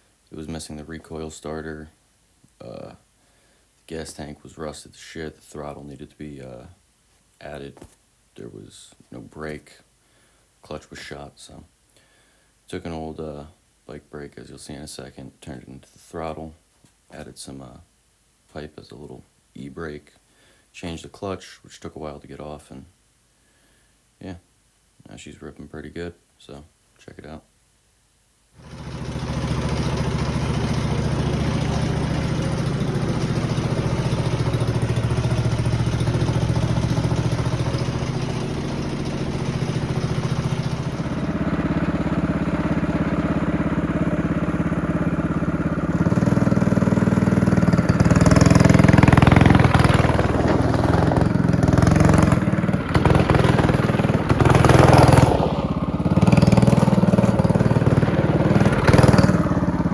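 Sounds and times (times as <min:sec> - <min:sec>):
go-kart engine revving: 0:28.6 - 0:59.9.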